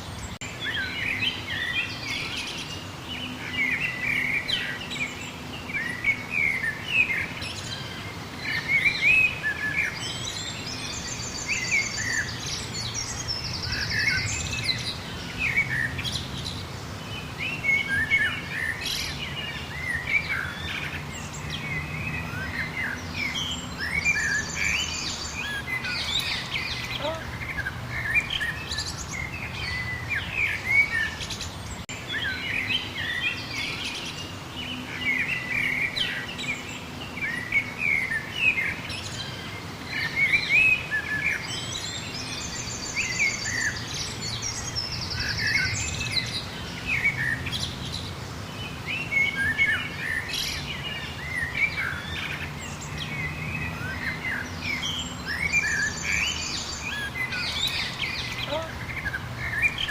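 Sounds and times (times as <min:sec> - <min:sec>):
birds chirping and singing: 0:00.0 - 0:59.9
high rapid bird trills: 0:00.0 - 0:59.9.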